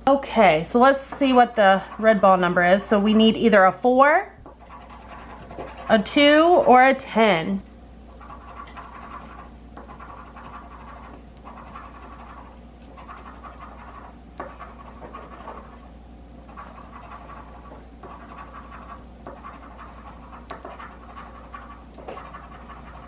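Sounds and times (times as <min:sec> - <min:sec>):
scratching lottery ticket: 0:00.8 - 0:03.7, 0:04.6 - 0:06.1, 0:08.2 - 0:15.8, 0:16.5 - 0:23.0.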